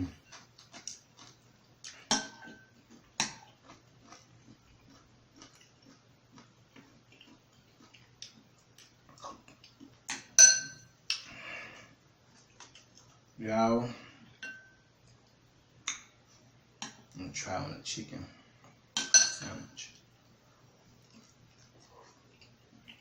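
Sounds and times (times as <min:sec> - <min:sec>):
chewing: 0:00.1 - 0:02.1, 0:02.7 - 0:10.1, 0:12.3 - 0:13.2, 0:20.7 - 0:23.0
metal utensil clinking on dish: 0:10.4 - 0:10.8, 0:14.4 - 0:14.8, 0:19.0 - 0:19.6.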